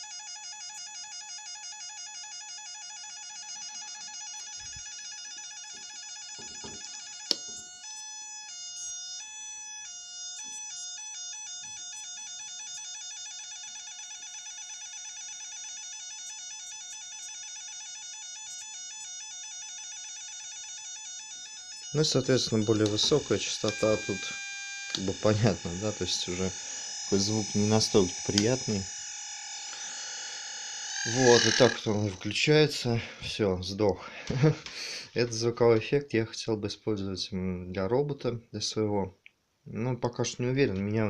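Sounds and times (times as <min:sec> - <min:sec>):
buzzy two-pitch electronic tone: 0:21.6 - 0:33.1.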